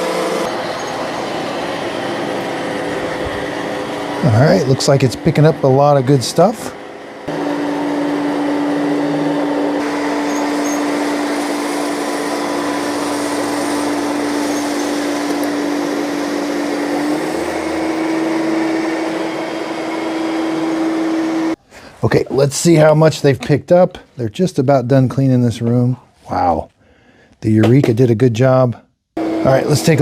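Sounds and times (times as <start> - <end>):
robot vacuum cleaner whirring: 0.0 - 21.6.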